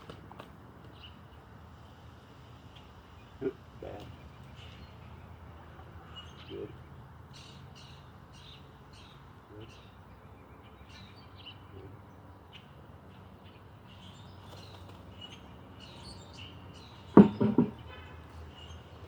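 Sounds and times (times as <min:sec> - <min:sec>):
small birds chirping: 0:02.7 - 0:19.0
loud thumps: 0:17.2 - 0:17.8.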